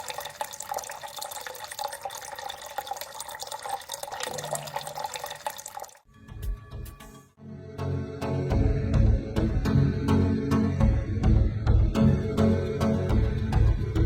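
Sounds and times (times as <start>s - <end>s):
water trickling and dripping: 0.0s - 6.1s
music: 6.1s - 14.0s.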